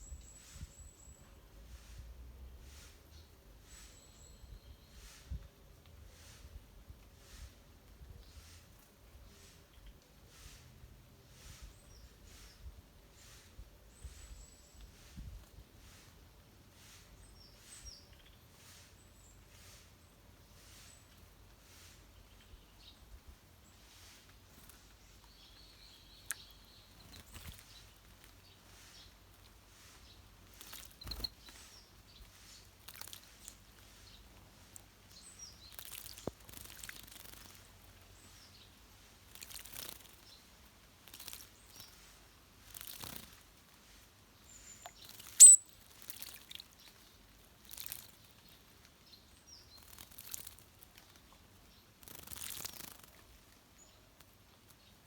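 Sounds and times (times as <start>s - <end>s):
birds splashing in water: 29.9s - 38.0s, 39.3s - 44.0s, 44.7s - 48.8s, 49.7s - 54.6s
birds chirping: 44.4s - 45.7s.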